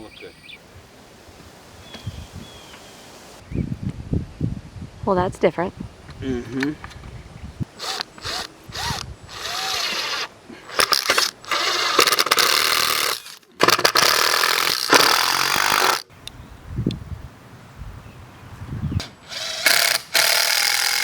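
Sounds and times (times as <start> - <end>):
cordless drill motor whining: 7.8 - 16.0, 19.3 - 21.0.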